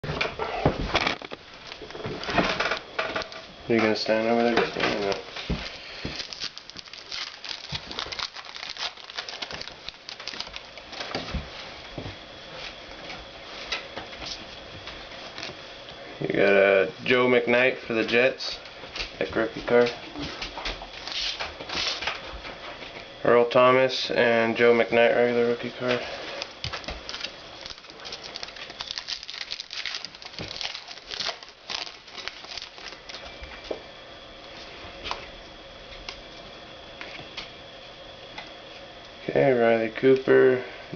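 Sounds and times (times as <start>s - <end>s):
foil wrappers crinkling: 0.8s - 11.3s, 21.0s - 22.0s, 25.8s - 33.4s.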